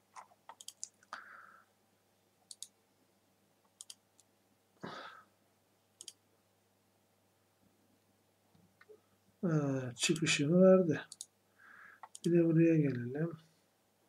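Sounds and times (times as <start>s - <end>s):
computer mouse clicks: 0.1s - 1.2s, 2.5s - 2.8s, 3.7s - 4.3s, 6.0s - 6.2s, 11.0s - 11.3s, 12.0s - 12.4s.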